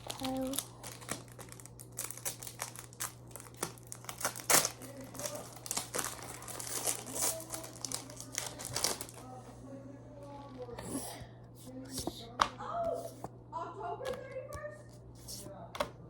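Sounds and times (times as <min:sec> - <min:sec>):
foil pack crinkling and tearing: 0:00.0 - 0:09.4.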